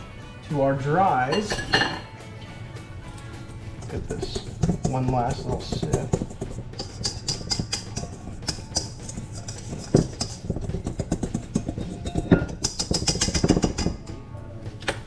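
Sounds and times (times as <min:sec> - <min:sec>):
utensil scraping a mixing bowl: 0:03.1 - 0:14.1.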